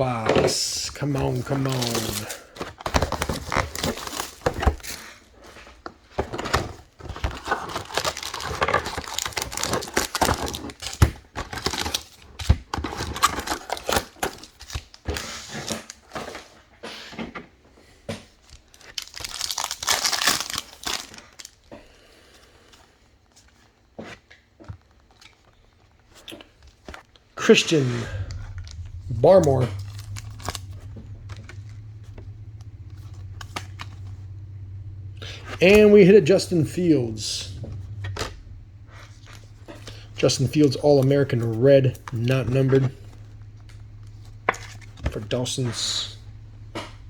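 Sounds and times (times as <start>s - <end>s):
plastic wrapping tearing and crinkling: 1.3s - 5.3s, 6.9s - 16.4s, 18.5s - 21.7s, 27.7s - 32.6s.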